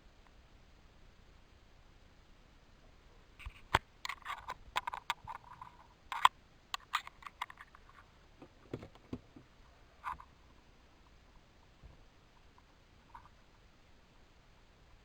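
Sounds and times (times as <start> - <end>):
plastic clicks and rattles: 3.4 - 10.2.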